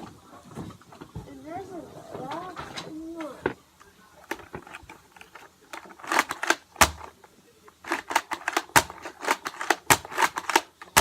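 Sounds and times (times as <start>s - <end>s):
objects clicking and tapping: 4.3s - 11.0s.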